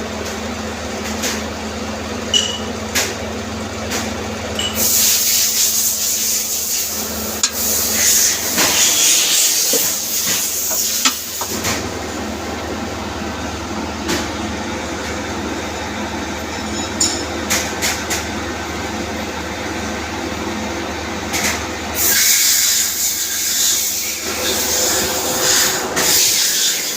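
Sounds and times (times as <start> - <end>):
machine mechanical hum: 0.0 - 26.9
loud hiss: 4.8 - 11.5.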